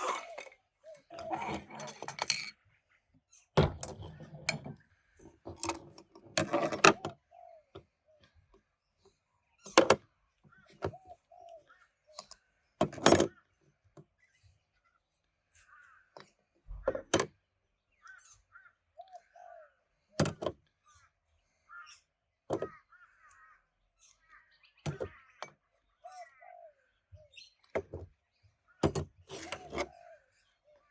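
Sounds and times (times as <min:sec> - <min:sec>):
metal parts clanking: 0:01.2 - 0:02.6.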